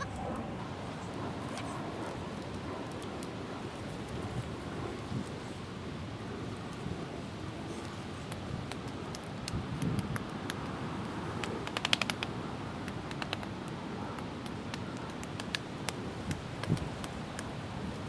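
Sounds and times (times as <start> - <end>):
wind noise: 16.0 - 18.0.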